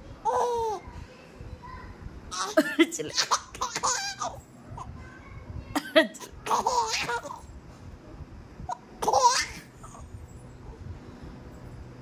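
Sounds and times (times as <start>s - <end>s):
baby laughing: 0.2s - 0.8s, 2.3s - 4.4s, 6.0s - 7.4s, 9.0s - 9.7s
woman coughing: 2.6s - 3.2s, 5.8s - 6.2s.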